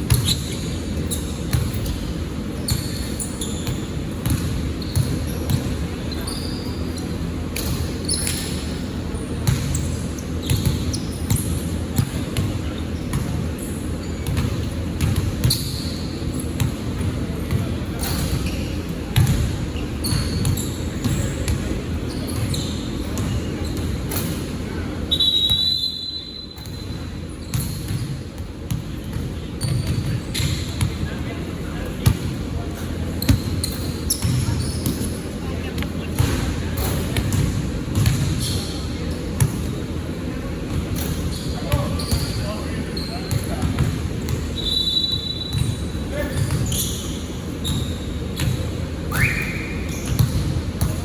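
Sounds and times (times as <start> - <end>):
basketball bouncing: 0.0 - 0.6, 1.5 - 2.0, 3.6 - 5.8, 9.4 - 9.8, 10.5 - 13.4, 14.2 - 15.7, 19.2 - 19.5, 37.2 - 38.4, 43.3 - 44.4, 47.7 - 48.7, 50.0 - 51.0
shoe squeaks on gym floor: 0.0 - 28.3, 29.1 - 31.0, 32.8 - 37.4, 38.0 - 39.9, 40.9 - 51.0
sharp high whistle: 25.1 - 26.6, 44.6 - 45.6, 49.1 - 49.8
players' voices: 29.3 - 47.3.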